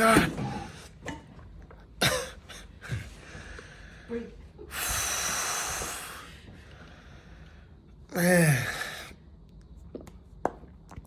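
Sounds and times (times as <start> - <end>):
long exhale: 3.3 - 7.7
sharp intake of breath: 4.7 - 7.6.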